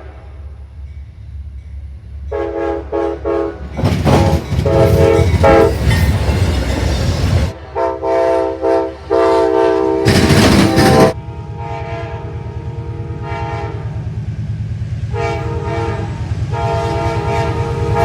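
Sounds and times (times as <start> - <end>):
train wheels rushing on rails: 0.0 - 7.8, 8.5 - 18.0
train horn blasts: 2.3 - 6.0, 7.5 - 14.1, 15.1 - 18.0.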